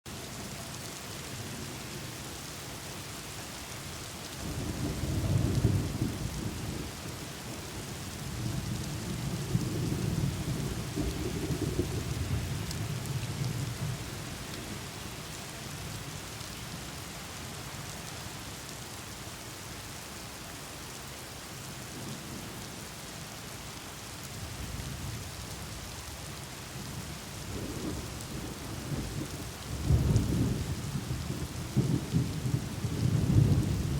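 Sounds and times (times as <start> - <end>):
rain hissing: 0.1 - 33.9
rolling thunder: 4.5 - 7.0, 8.4 - 14.1, 27.5 - 33.9.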